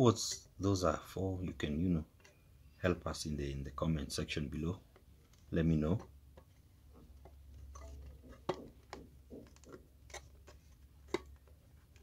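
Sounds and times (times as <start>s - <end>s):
clicks handling plastic casing: 4.9s - 12.0s.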